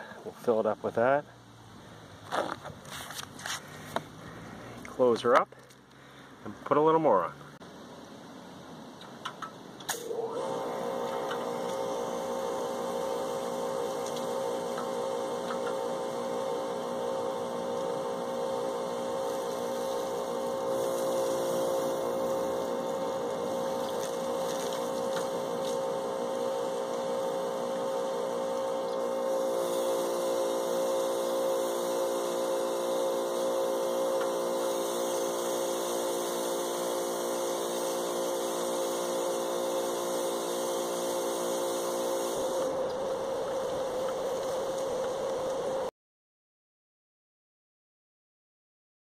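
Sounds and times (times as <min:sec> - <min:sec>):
pressure washer motor humming: 0:09.9 - 0:45.9
water spray hissing: 0:19.2 - 0:26.0.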